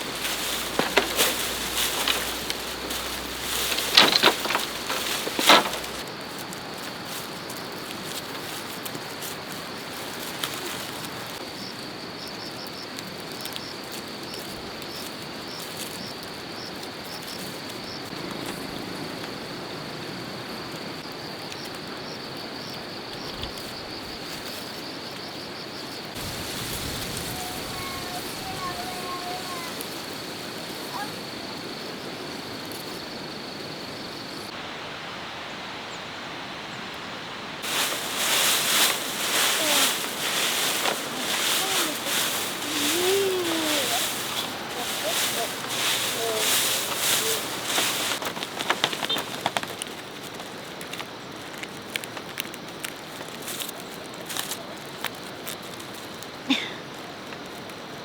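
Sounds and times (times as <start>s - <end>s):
sharp knocks and rustles: 0.0s - 6.1s, 37.6s - 51.0s
insects chirping: 0.0s - 58.0s.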